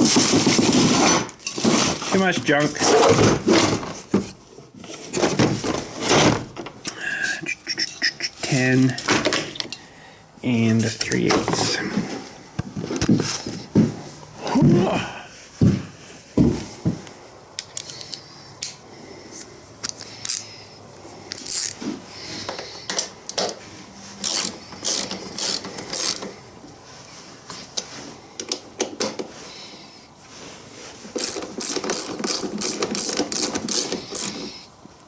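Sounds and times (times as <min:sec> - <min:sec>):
socket ratchet clicking: 0:24.2 - 0:26.3, 0:31.2 - 0:34.4.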